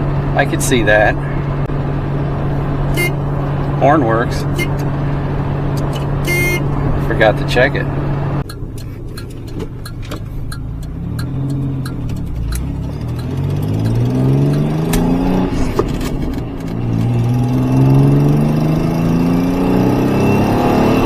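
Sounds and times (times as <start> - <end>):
car engine accelerating: 0.0 - 21.0
light ticking: 8.4 - 15.1.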